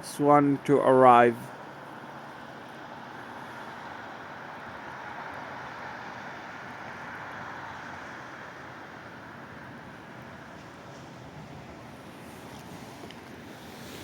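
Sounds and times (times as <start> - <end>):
distant traffic hiss: 0.0 - 14.0.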